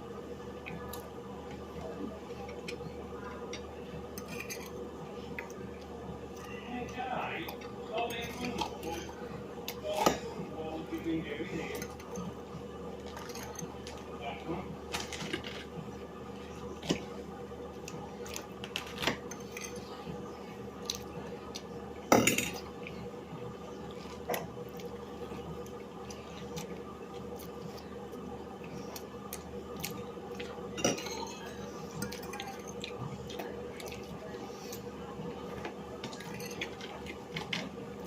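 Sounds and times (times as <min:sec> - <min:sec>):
steady hum: 0:00.0 - 0:38.0
cutlery clatter: 0:30.8 - 0:31.5.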